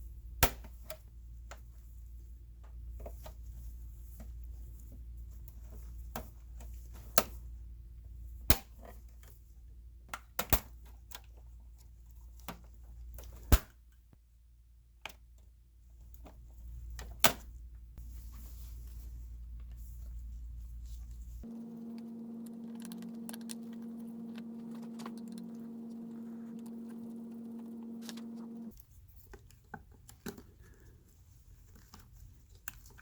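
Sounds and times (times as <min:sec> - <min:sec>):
low steady hum: 0:14.3 - 0:28.8.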